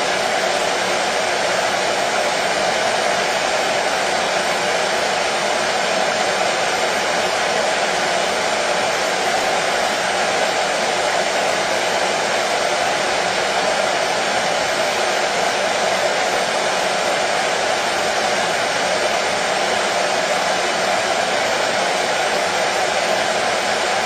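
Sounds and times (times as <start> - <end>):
hair dryer running: 0.0 - 24.0.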